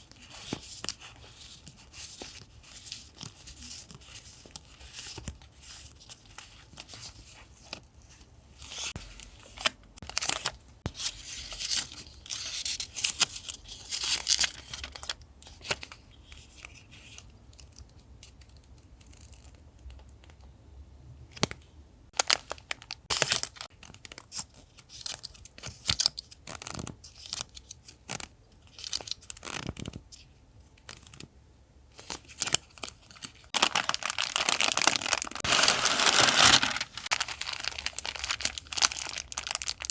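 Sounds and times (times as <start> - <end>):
packaging crinkling: 22.2 - 23.7, 32.3 - 39.9
paper tearing and rustling: 33.6 - 39.9.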